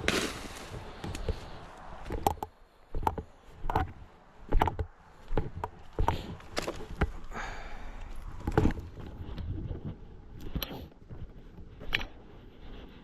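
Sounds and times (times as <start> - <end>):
footsteps on leaf litter: 0.0 - 1.7
leaves rustling: 0.0 - 2.2
twigs cracking and snapping: 0.0 - 3.8, 4.6 - 9.4.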